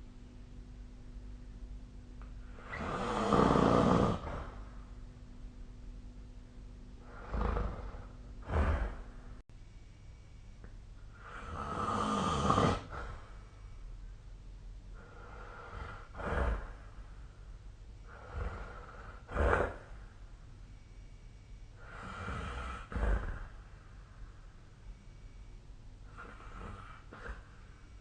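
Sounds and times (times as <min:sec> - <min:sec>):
person snoring: 0:02.4 - 0:04.7, 0:07.0 - 0:09.4, 0:11.1 - 0:13.3, 0:15.0 - 0:17.0, 0:18.0 - 0:20.0, 0:21.8 - 0:23.7, 0:26.1 - 0:27.6.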